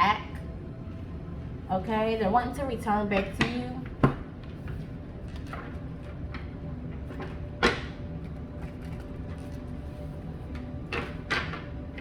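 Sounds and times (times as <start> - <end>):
cards being shuffled: 8.2 - 10.0.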